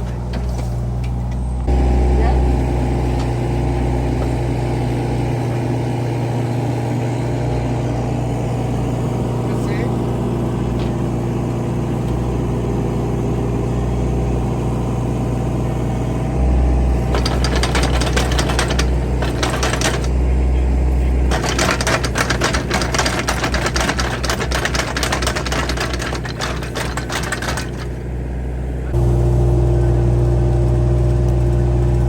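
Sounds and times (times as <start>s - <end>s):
machine engine running: 0.0s - 32.0s
rapid clattering: 16.9s - 29.0s.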